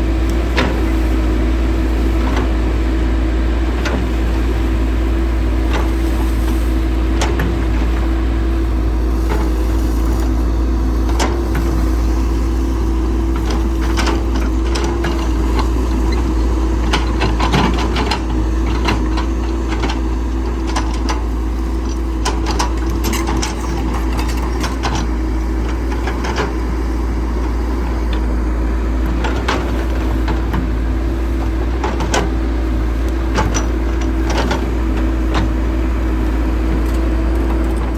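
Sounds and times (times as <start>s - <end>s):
heavy machine engine rumbling: 0.0s - 37.9s.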